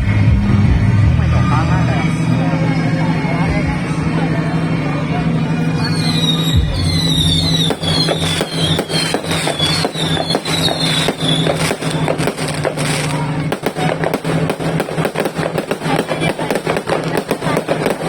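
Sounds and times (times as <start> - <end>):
fireworks bangs and crackles: 0.0 - 18.0
falling firework whistles: 5.7 - 18.0.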